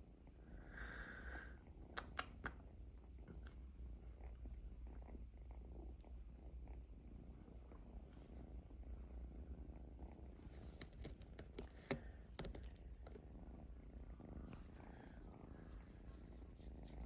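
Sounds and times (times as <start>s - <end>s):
kitten purring: 0.0s - 17.0s
sharp clicks and scratches: 10.7s - 13.2s.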